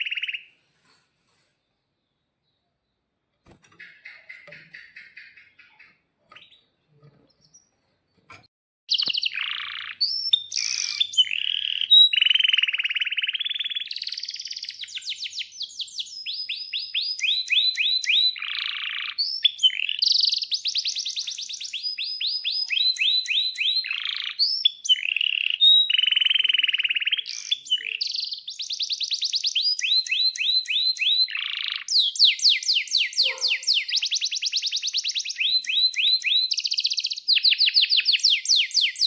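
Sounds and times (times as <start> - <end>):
canary singing trills: 0.0 - 0.5, 3.6 - 7.8, 8.9 - 39.0
faint bird chirps: 8.9 - 39.0.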